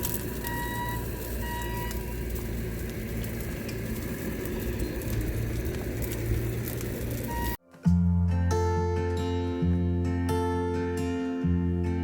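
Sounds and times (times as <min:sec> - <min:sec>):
fire crackling and popping: 0:00.0 - 0:07.6
low fire rumble: 0:00.0 - 0:07.6.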